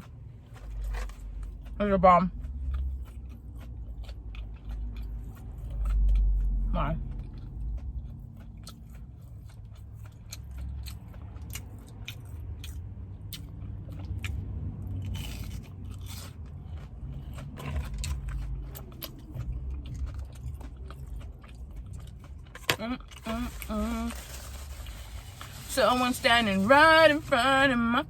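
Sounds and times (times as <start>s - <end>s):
crunching and chewing food: 0.0s - 28.0s
rustling: 23.2s - 27.4s.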